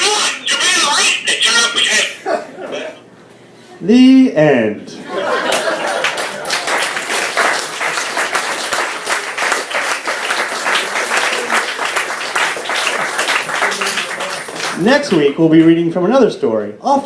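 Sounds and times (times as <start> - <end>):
voices: 0.0 - 3.0
audience clapping: 5.3 - 15.3.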